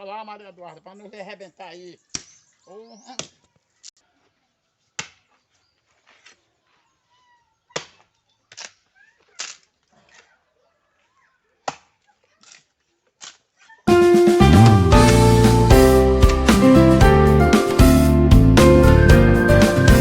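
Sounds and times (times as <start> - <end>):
blade chopping into wood: 5.0 - 5.3, 7.8 - 8.8, 11.6 - 13.4.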